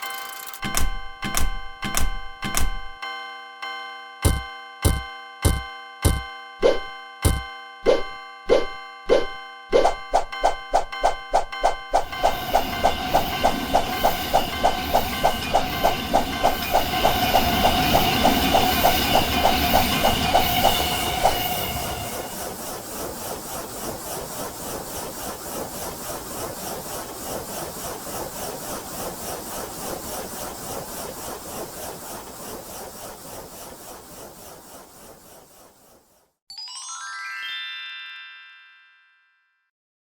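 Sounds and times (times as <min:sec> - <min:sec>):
train wheel clatter: 0:12.2 - 0:26.7.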